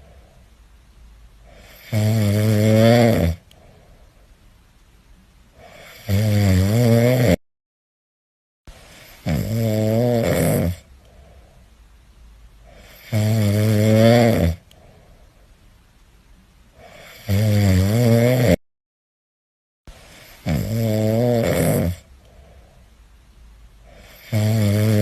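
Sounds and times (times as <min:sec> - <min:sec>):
kitten snoring: 0:01.5 - 0:03.4, 0:05.6 - 0:07.4, 0:09.0 - 0:11.5, 0:12.6 - 0:14.6, 0:16.8 - 0:18.6, 0:20.2 - 0:22.7, 0:23.8 - 0:25.0.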